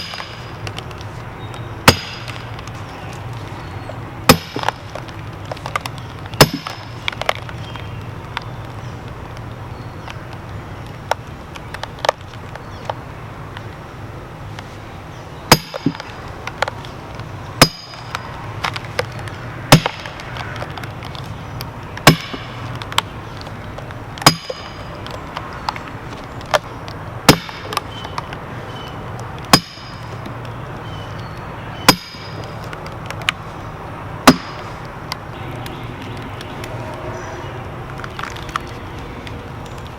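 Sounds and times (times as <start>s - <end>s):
sledgehammer clanging on steel wedge: 0.0s - 0.6s, 1.8s - 2.4s, 4.3s - 4.8s, 6.4s - 7.0s, 15.5s - 16.1s, 17.6s - 18.2s, 24.2s - 24.9s, 27.3s - 27.8s, 29.5s - 30.1s, 31.8s - 32.4s, 34.2s - 34.6s.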